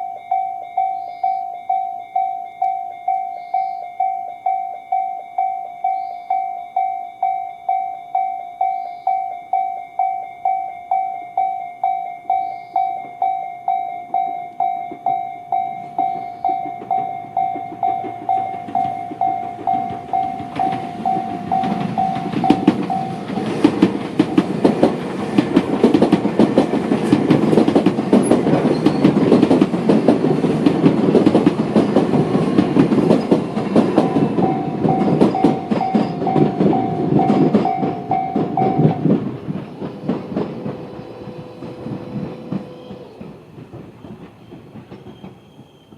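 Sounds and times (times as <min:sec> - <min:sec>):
electronic level crossing bell: 0:00.0 - 0:24.4, 0:33.6 - 0:39.1
train wheels clattering over rail joints: 0:14.8 - 0:45.9.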